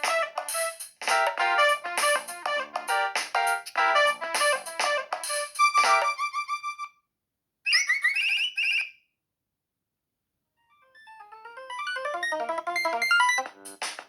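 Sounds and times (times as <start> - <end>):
mobile phone ringtone melody: 5.6 - 6.9, 10.6 - 13.6.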